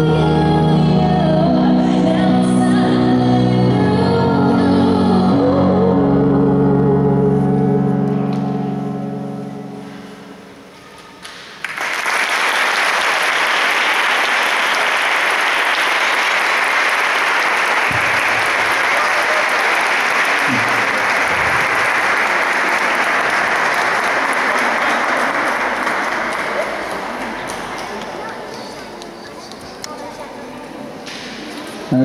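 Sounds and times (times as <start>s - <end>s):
audience applauding: 11.0s - 30.3s.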